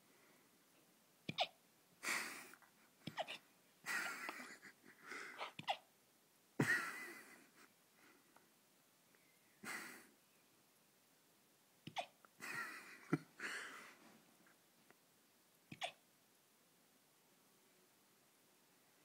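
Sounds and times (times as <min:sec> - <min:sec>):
puppy hiccupping: 0:01.3 - 0:01.6, 0:03.0 - 0:03.4, 0:05.4 - 0:05.9, 0:11.8 - 0:12.2, 0:15.7 - 0:16.0.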